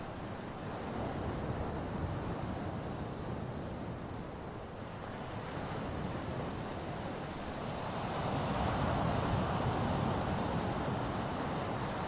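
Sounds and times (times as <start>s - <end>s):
ocean surf: 0.0s - 12.0s.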